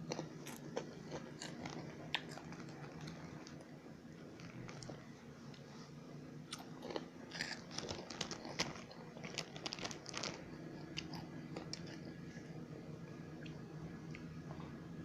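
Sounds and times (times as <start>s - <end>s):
crunchy snack chewing: 0.0s - 3.6s, 6.5s - 12.5s.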